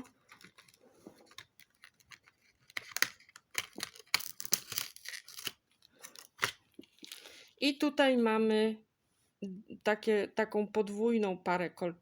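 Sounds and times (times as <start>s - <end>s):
packet crackling and clicking: 0.0s - 7.4s
cardboard tearing: 0.6s - 5.6s.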